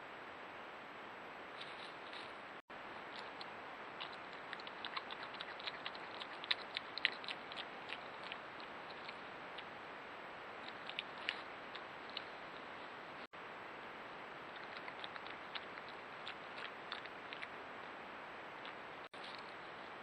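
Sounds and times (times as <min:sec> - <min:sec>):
microphone hiss: 0:00.0 - 0:20.0.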